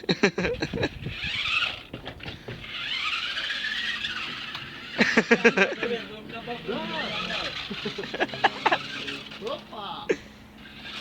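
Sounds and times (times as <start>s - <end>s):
wheels spinning with squealing whine: 0.5s - 11.0s
car engine revving: 2.6s - 11.0s.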